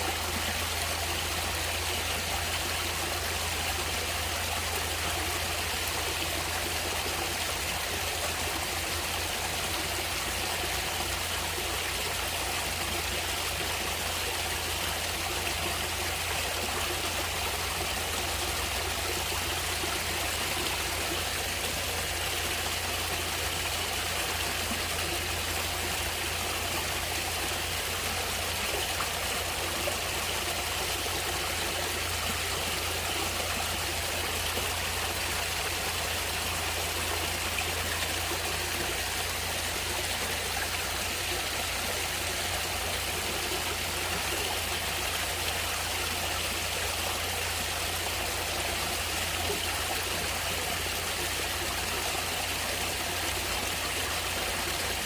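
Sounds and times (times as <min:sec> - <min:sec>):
stream flowing: 0:00.0 - 0:55.0.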